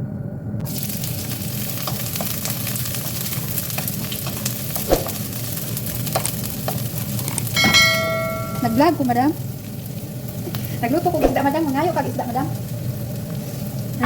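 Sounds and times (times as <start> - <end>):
food sizzling in hot oil: 0.6 - 14.0
utensil knocking against pan: 7.6 - 8.9.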